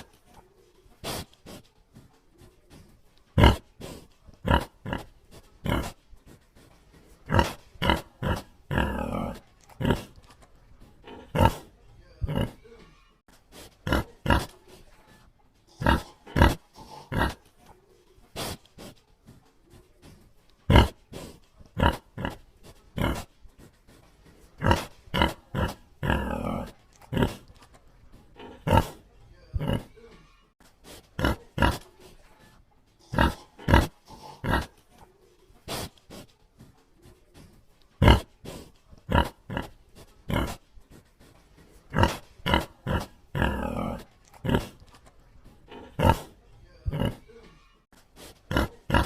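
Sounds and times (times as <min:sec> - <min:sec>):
pig grunting: 0:03.4 - 0:06.0, 0:07.0 - 0:12.8, 0:13.6 - 0:14.7, 0:15.7 - 0:17.6, 0:20.7 - 0:23.3, 0:24.4 - 0:27.6, 0:28.2 - 0:30.1, 0:31.1 - 0:32.1, 0:33.0 - 0:34.9, 0:38.0 - 0:40.7, 0:41.8 - 0:47.5, 0:48.4 - 0:49.0.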